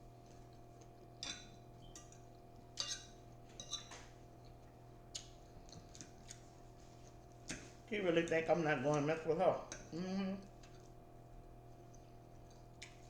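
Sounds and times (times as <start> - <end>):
cutlery clinking on dish: 1.2 - 2.2, 2.8 - 4.1.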